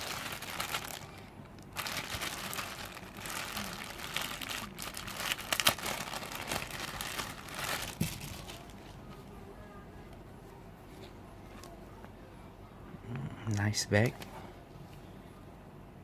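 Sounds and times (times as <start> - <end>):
packaging crinkling: 0.0 - 9.0.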